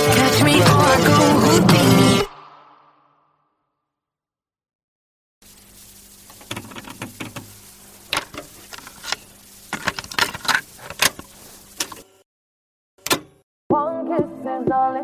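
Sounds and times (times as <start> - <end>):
sharp clicks and rattles: 6.3 - 7.5, 8.1 - 12.1.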